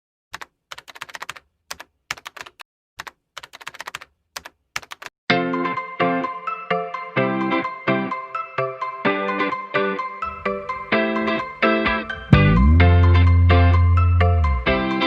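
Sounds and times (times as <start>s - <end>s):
keyboard typing clicks: 0.3s - 5.1s
music with pitched notes: 10.2s - 15.0s.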